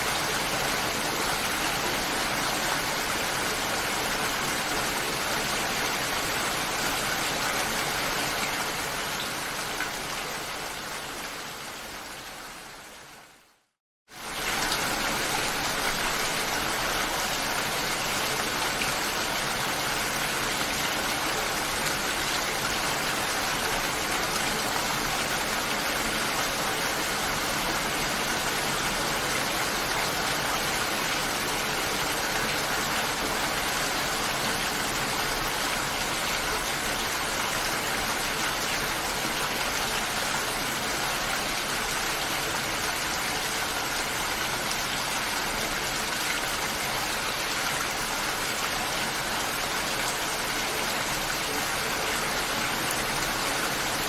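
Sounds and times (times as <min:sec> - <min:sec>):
steady rainfall: 0:00.0 - 0:54.0.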